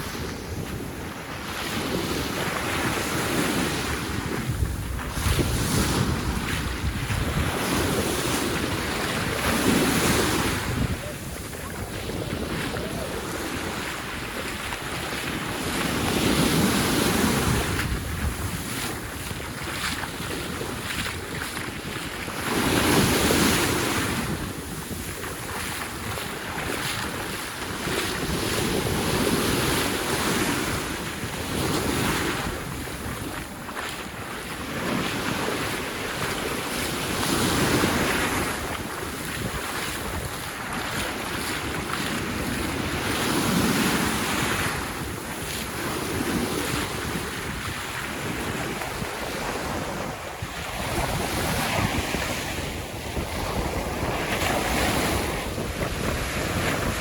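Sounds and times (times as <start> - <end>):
waves washing onto beach: 0.0 - 57.0
wind rumbling on microphone: 0.0 - 57.0.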